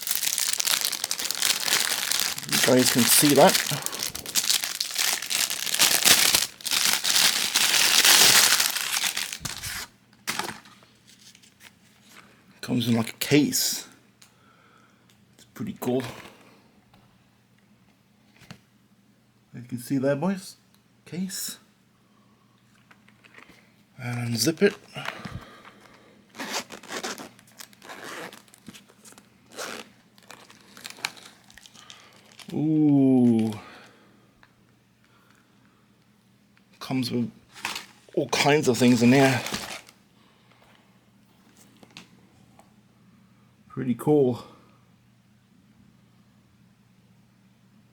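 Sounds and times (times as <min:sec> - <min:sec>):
packaging crinkling and rustling: 0:00.0 - 0:12.2, 0:24.3 - 0:33.6, 0:37.5 - 0:40.0.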